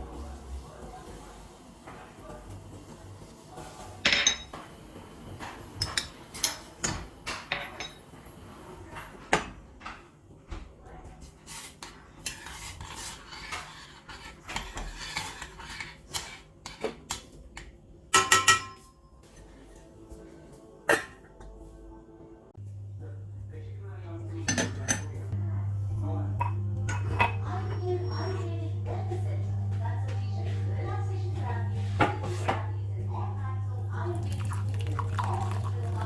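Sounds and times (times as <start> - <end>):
metal utensils clinking: 4.0 - 4.6, 18.2 - 18.9.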